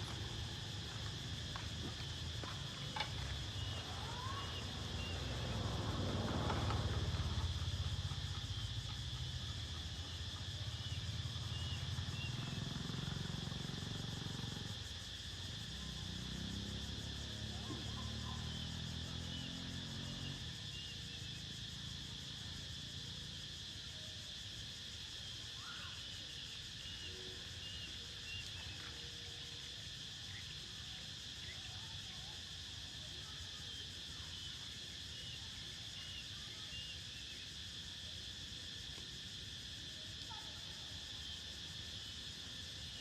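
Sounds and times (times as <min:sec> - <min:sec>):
insects chirring: 0:00.0 - 0:43.0
vehicle engine passing: 0:03.8 - 0:08.3, 0:15.8 - 0:20.5.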